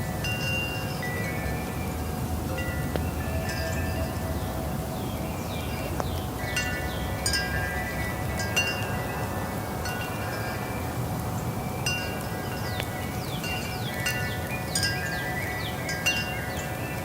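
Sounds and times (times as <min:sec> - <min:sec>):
low rush of wind: 0:00.0 - 0:17.0
wind chimes ringing: 0:00.0 - 0:17.0.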